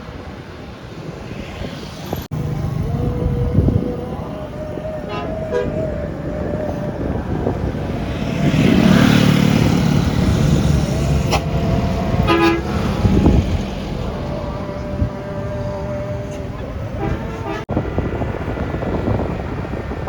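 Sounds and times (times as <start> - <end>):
bus engine rumbling with hiss: 0.0 - 20.0
multi-tone bus horn toots: 5.0 - 6.0, 10.1 - 13.6, 15.8 - 17.8.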